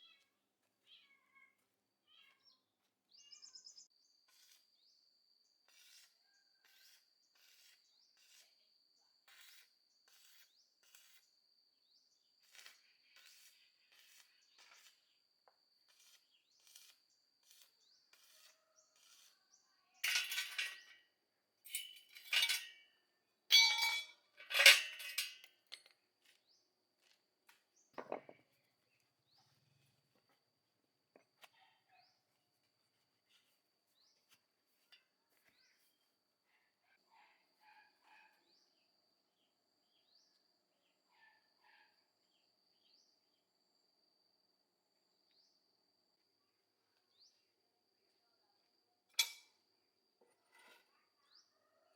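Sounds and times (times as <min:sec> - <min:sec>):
faint high insect-like tone: 0:02.4 - 0:23.5, 0:25.4 - 0:51.9
metal tools clinking and scraping: 0:20.0 - 0:21.1, 0:21.7 - 0:22.9, 0:23.5 - 0:26.0, 0:49.2 - 0:49.5.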